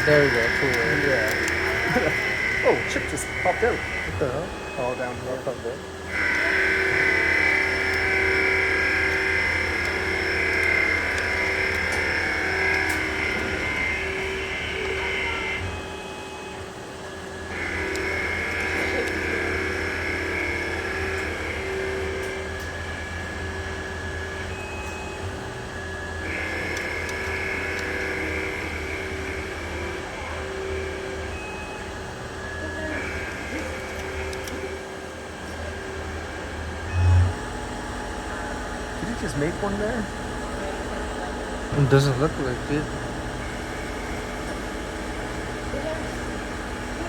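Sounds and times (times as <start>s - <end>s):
high cutting whine: 0.0s - 16.5s, 17.1s - 47.0s
machine hum: 0.0s - 47.0s.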